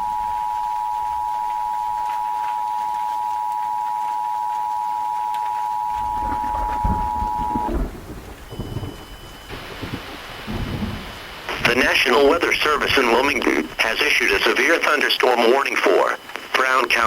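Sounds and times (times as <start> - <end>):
two-tone alert signal: 0.0 - 7.9, 8.5 - 9.6
thunder rumbling: 5.8 - 15.6.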